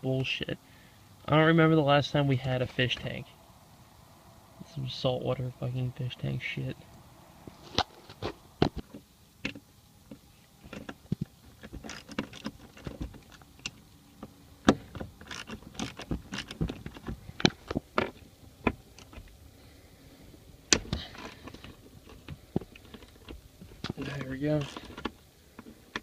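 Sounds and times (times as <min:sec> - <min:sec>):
car seat being handled: 0:14.6 - 0:19.3.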